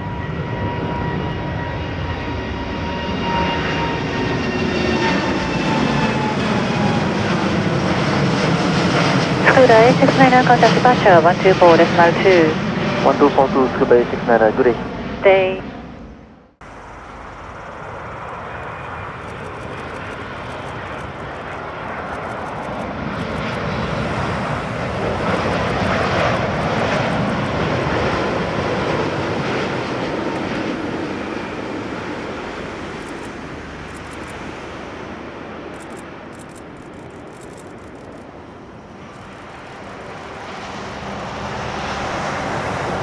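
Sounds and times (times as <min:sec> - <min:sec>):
jet engines roaring past: 0:00.0 - 0:43.0.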